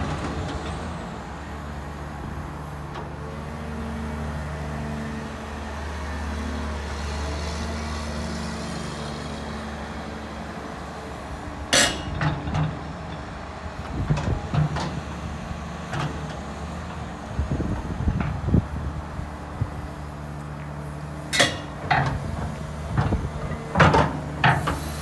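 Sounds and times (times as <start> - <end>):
excavator diesel engine running: 0.0 - 25.0
metallic knocks and clanks: 11.8 - 12.8, 21.4 - 22.2.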